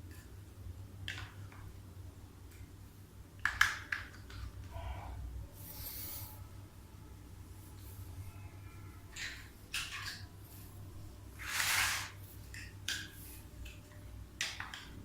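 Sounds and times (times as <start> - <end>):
low steady hum: 0.0 - 15.0
rustling scrape: 11.4 - 12.3.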